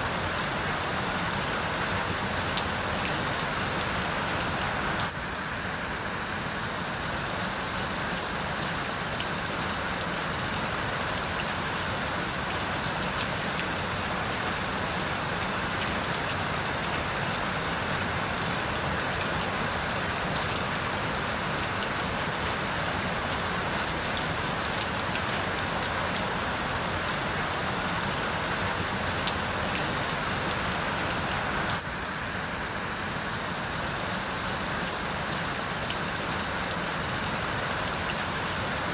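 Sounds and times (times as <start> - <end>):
rain hiss: 0.0 - 38.9.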